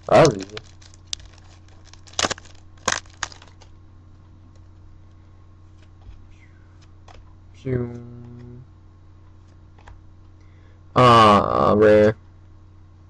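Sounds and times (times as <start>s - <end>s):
foil wrapper crinkling: 0.0s - 3.8s.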